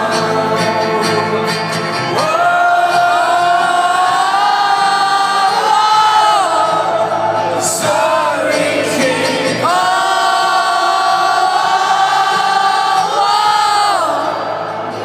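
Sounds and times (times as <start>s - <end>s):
live rock band playing: 0.0s - 3.7s.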